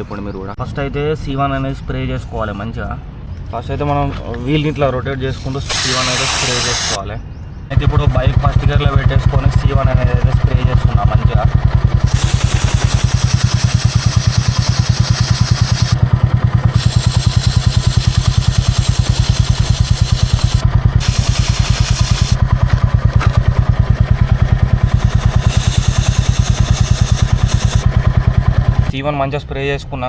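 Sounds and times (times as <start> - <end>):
aerosol spray hissing: 5.7 - 7.0, 11.8 - 28.9
motorcycle engine idling: 7.7 - 29.0.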